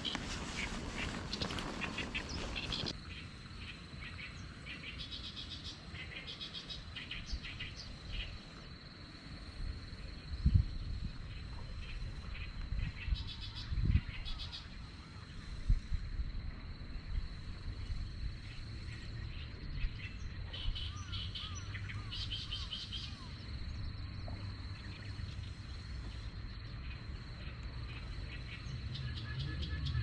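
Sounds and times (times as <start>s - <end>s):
birds chirping: 0.0s - 3.0s.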